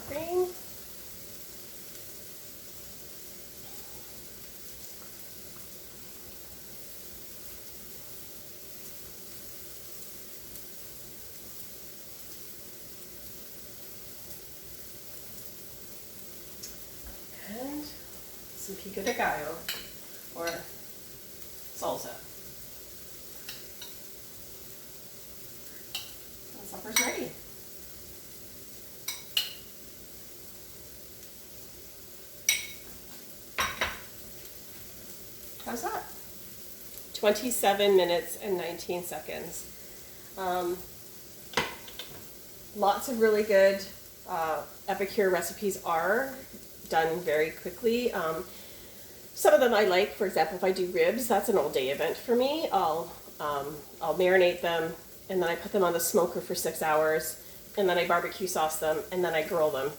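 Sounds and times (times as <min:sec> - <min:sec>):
faint hiss: 0:00.0 - 0:59.9
dishes and cutlery clinking: 0:32.5 - 0:34.1.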